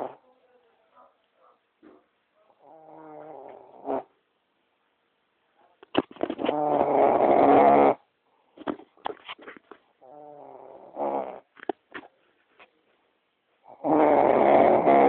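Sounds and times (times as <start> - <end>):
person snoring loudly: 2.6 - 4.1, 6.4 - 8.0, 10.0 - 11.5, 13.7 - 15.0.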